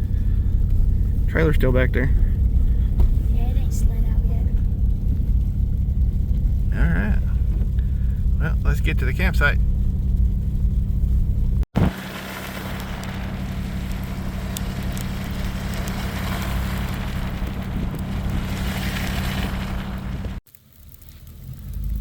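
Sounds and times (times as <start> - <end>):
truck engine rumble: 0.0 - 22.0
tyres hissing on slushy road: 11.8 - 20.4.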